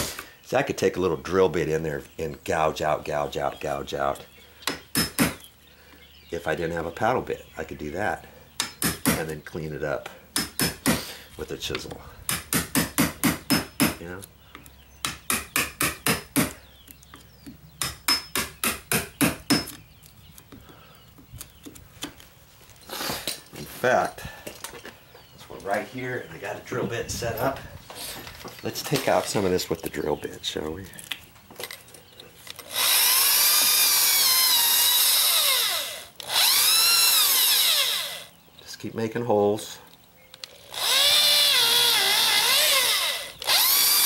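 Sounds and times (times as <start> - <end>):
hammer striking chisel: 4.7 - 5.4, 8.6 - 9.2, 10.4 - 11.0, 12.3 - 14.0, 15.0 - 16.6, 17.8 - 19.8
electric drill boring into wood: 32.6 - 38.3, 40.5 - 44.0.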